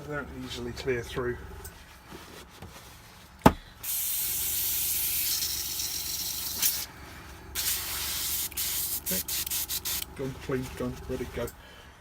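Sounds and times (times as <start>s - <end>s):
airbrush spraying water: 3.8s - 11.6s.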